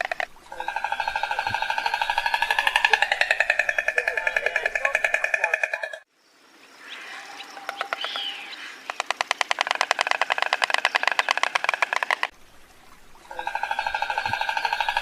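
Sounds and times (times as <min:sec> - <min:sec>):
stork clattering its bill: 0:00.0 - 0:06.1, 0:07.6 - 0:12.3, 0:13.3 - 0:15.0.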